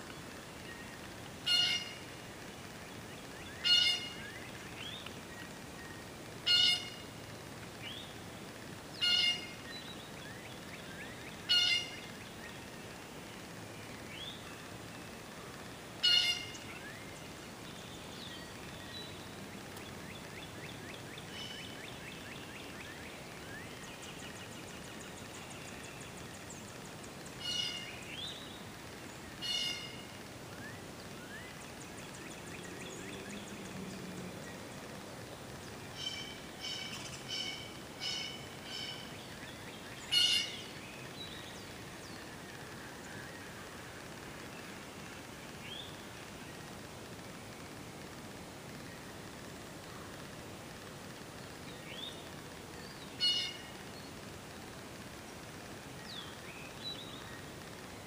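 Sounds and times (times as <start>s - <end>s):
birds trilling songs: 0.0s - 7.2s, 7.8s - 46.8s, 51.3s - 58.0s
steady background hiss: 0.0s - 58.0s
wild birds calling: 0.2s - 46.8s, 48.7s - 58.0s.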